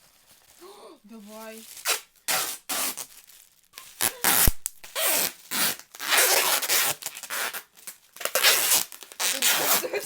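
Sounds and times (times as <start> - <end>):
sticky tape pulled off roll: 1.8 - 3.1, 3.7 - 10.0.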